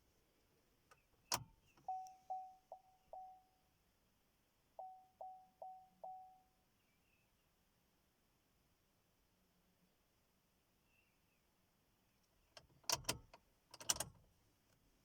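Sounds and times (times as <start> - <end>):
short warning beeps: 1.9 - 3.6, 4.8 - 6.5.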